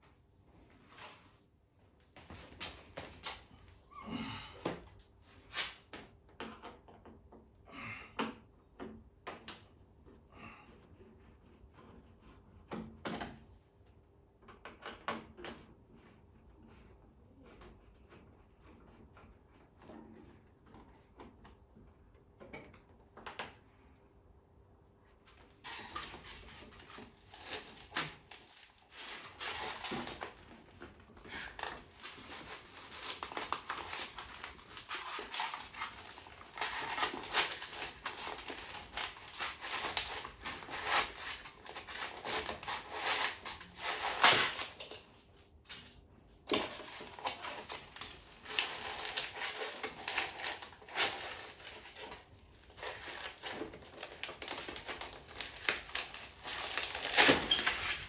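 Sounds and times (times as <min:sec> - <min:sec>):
plastic and cardboard crinkling: 0:25.3 - 0:58.0.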